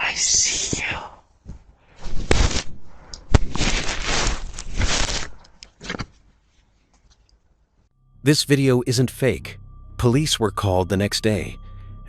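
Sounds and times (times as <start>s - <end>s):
scratchy rustling and scraping: 3.4s - 7.3s.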